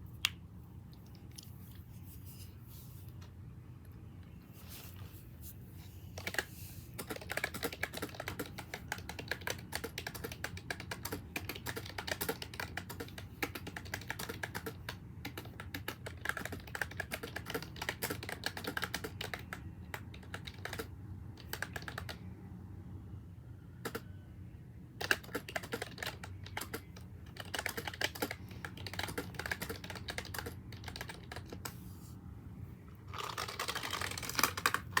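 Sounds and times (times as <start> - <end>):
fast typing on keyboard: 6.2 - 22.2, 23.8 - 24.0, 25.0 - 31.8, 33.1 - 35.0.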